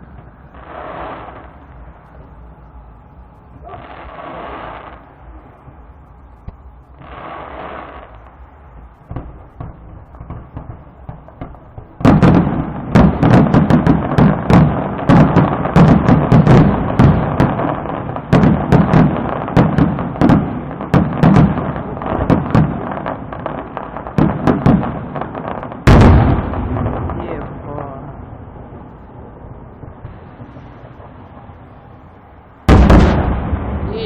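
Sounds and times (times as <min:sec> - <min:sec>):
fireworks bursts and cracks: 0:00.0 - 0:02.6, 0:03.4 - 0:34.0
loud firework bang: 0:09.1 - 0:22.8, 0:24.2 - 0:28.0, 0:32.6 - 0:34.0.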